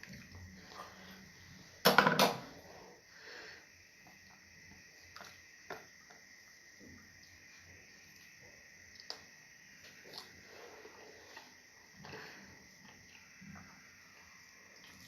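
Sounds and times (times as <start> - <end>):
soft mouth eating sounds: 8.9 - 13.8.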